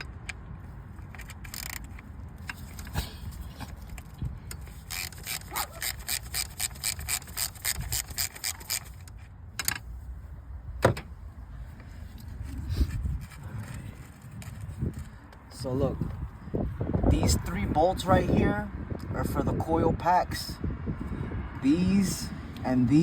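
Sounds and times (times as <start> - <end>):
ratchet wrench clicking: 1.0 - 2.9, 3.8 - 9.8.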